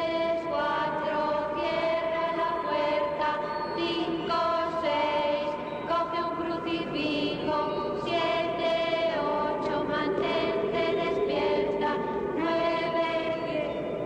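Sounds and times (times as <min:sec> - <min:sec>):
choir-like voices chanting: 0:00.0 - 0:14.0.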